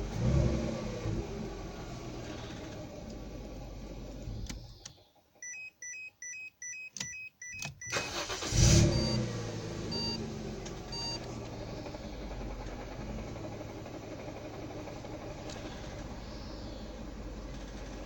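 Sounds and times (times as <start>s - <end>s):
car engine running: 0.0s - 5.0s, 7.9s - 18.0s
quick warning beeps: 5.4s - 9.3s, 9.9s - 10.2s, 10.9s - 11.2s
clicks: 6.9s - 8.0s
engine starting burst: 7.9s - 10.2s.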